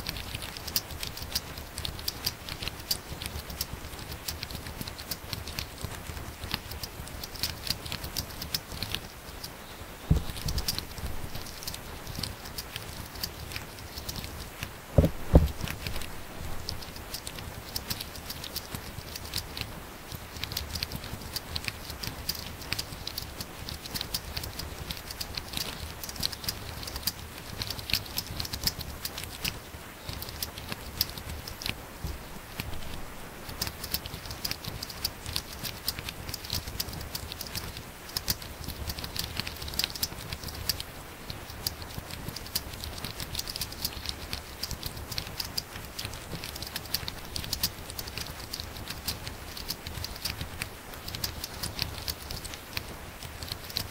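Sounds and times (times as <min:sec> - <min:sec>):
heavier thumps: 0:10.1 - 0:11.4, 0:15.0 - 0:16.8
fast typing on keyboard: 0:15.0 - 0:31.8, 0:32.6 - 0:53.9.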